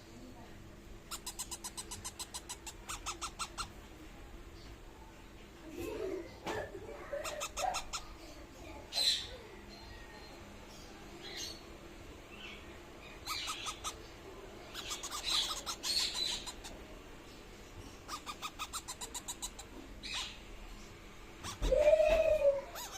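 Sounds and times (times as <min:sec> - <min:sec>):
parrots chirping rapidly: 0:01.0 - 0:03.8, 0:07.1 - 0:08.2, 0:12.3 - 0:16.9, 0:17.8 - 0:20.6, 0:21.4 - 0:21.7, 0:22.7 - 0:22.9.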